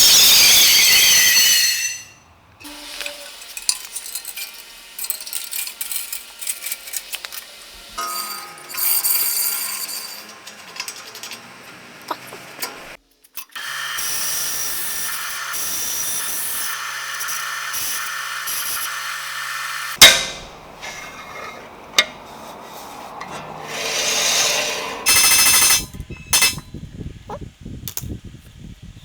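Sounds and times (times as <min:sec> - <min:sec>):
power tool running: 0:13.6 - 0:21.0.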